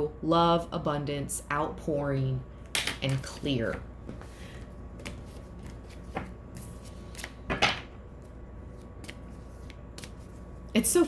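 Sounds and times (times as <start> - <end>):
cards rustling and tapping: 4.1 - 10.6.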